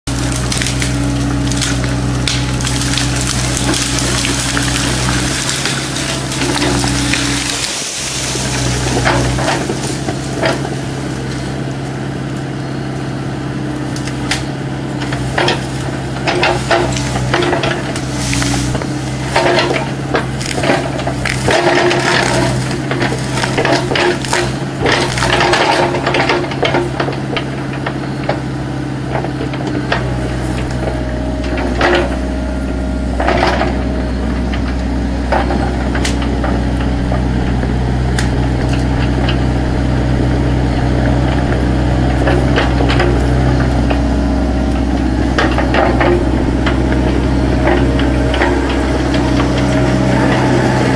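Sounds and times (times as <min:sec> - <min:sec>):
excavator diesel engine running: 0:00.0 - 0:50.9
wood cracking and snapping: 0:00.1 - 0:11.4, 0:14.0 - 0:28.4, 0:34.5 - 0:44.1.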